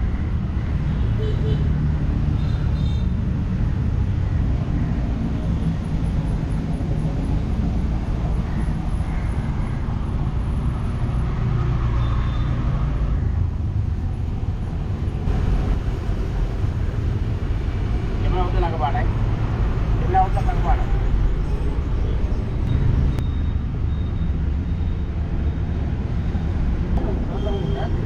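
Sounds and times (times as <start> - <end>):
steady low rumbling: 13.2 - 23.2.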